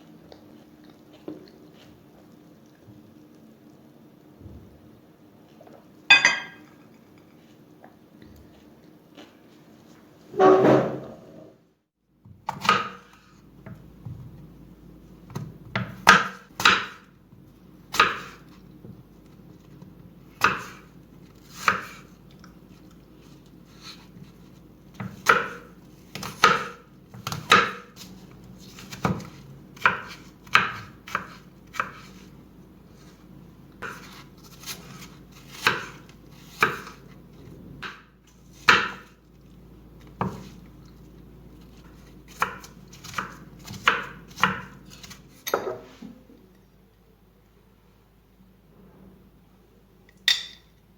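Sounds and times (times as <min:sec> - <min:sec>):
knife chopping on cutting board: 0:12.4 - 0:13.8, 0:15.3 - 0:17.1, 0:17.9 - 0:18.4, 0:20.4 - 0:22.1, 0:25.0 - 0:32.3, 0:33.8 - 0:37.2, 0:37.8 - 0:39.1, 0:40.2 - 0:40.6, 0:41.9 - 0:45.8.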